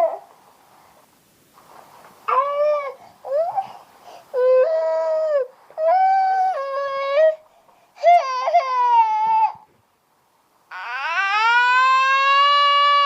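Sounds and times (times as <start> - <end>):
baby crying: 8.0 - 9.7, 10.7 - 13.0.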